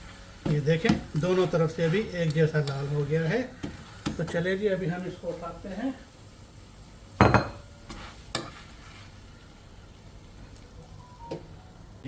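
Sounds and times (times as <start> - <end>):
flatbread sizzling on a griddle: 0.0 - 11.8
utensil knocks on griddle: 7.2 - 7.6.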